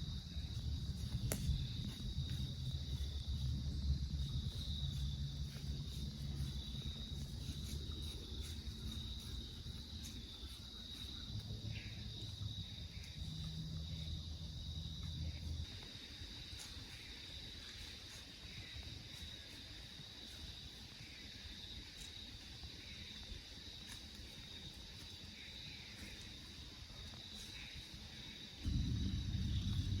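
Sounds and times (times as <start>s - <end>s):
crickets trilling: 0.0s - 30.0s
low hum: 28.6s - 30.0s.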